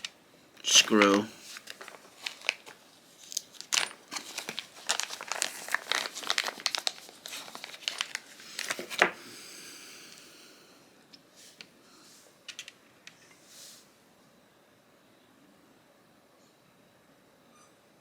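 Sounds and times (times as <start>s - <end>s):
crinkling rustle: 0.0s - 9.2s
soft steady hiss: 0.0s - 18.0s.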